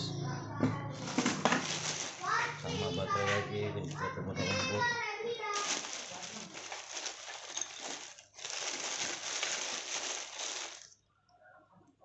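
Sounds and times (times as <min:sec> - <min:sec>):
packaging crinkling: 0:01.0 - 0:04.8, 0:05.5 - 0:11.0.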